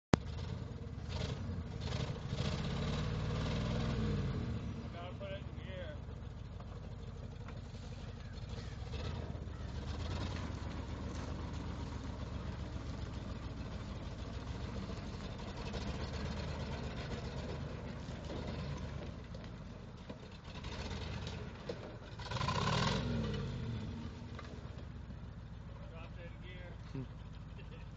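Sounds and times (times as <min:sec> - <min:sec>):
engine idling roughly: 0:05.0 - 0:18.0, 0:25.7 - 0:27.9.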